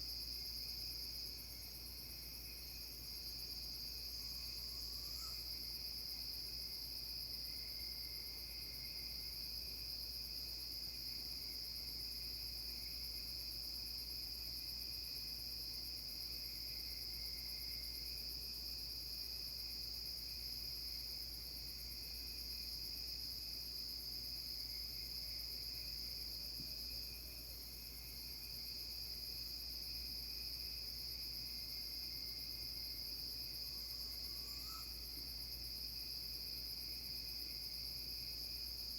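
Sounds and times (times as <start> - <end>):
crickets and insects trilling: 2.4 - 6.4, 22.6 - 38.9.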